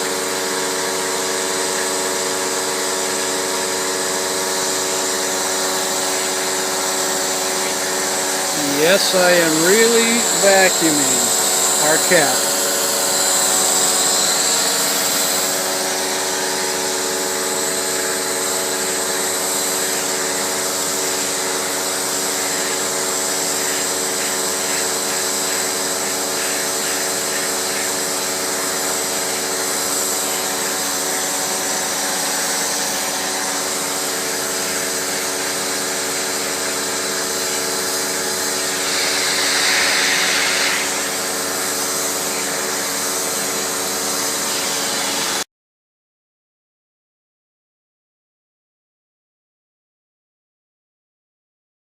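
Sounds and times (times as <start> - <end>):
vacuum cleaner running: 27.9 - 45.4.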